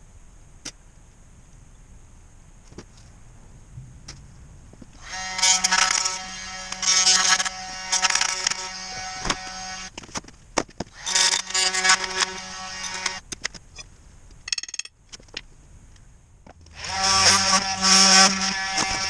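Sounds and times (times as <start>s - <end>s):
electric saw cutting tire: 5.0s - 9.9s, 10.9s - 13.2s, 16.7s - 19.0s.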